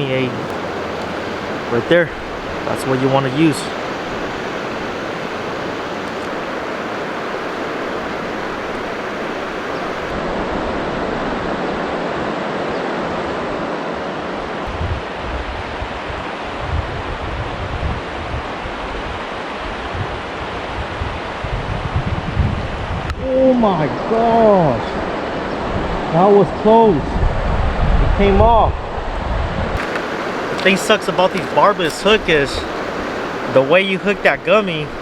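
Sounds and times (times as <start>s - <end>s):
river water rushing: 0.0s - 14.6s, 29.8s - 35.0s
wind gusting on microphone: 0.0s - 35.0s.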